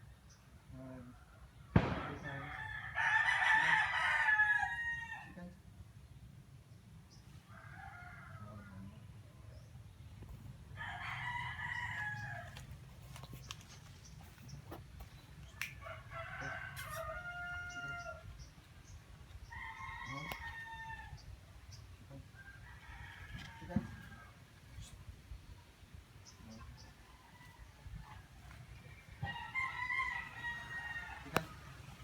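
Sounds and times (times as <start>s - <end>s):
rooster crowing: 1.8s - 5.4s, 10.8s - 12.6s, 15.8s - 18.2s, 19.5s - 21.2s, 29.1s - 32.0s.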